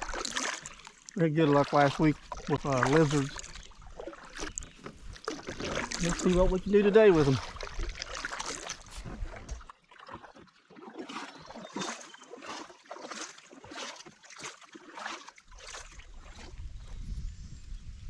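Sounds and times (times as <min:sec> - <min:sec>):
kayak paddle strokes: 0:00.0 - 0:17.0
wind rumble on microphone: 0:15.8 - 0:18.0.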